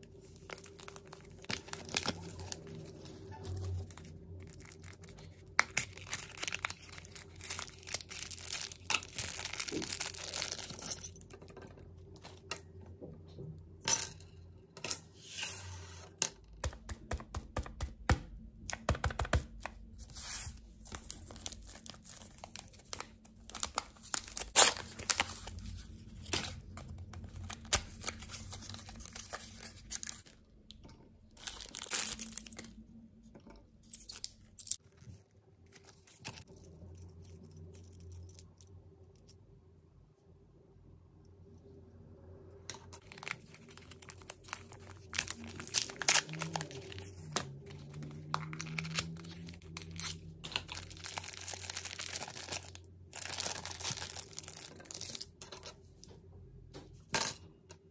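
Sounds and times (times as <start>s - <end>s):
packaging tearing and crinkling: 0.2s - 3.0s, 3.6s - 10.9s, 21.1s - 26.4s, 31.4s - 32.7s, 43.0s - 55.3s.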